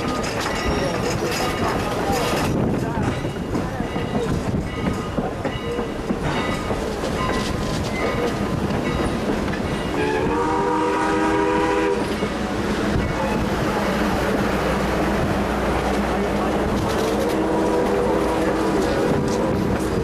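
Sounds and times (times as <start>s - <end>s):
wheels clattering over rail joints: 0.0s - 10.0s
steam train passing: 0.0s - 20.0s.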